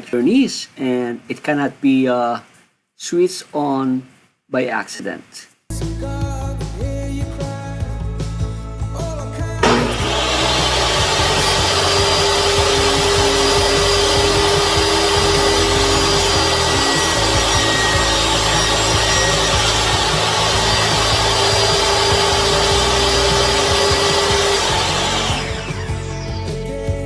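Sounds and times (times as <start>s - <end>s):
music: 5.7s - 27.0s
table saw cutting wood: 9.6s - 26.6s.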